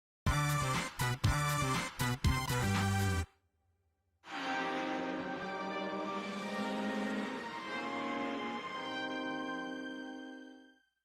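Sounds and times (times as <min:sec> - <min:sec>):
music with held chords: 0:04.3 - 0:10.8.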